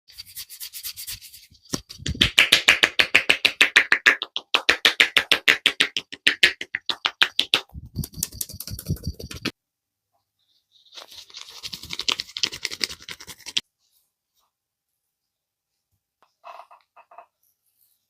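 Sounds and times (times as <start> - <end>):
rubbing of hair and scalp: 0.1 - 2.5, 5.6 - 9.6, 10.6 - 13.7
hands slapping taps on head: 1.7 - 9.5
fast patting: 1.7 - 9.6, 11.1 - 13.6.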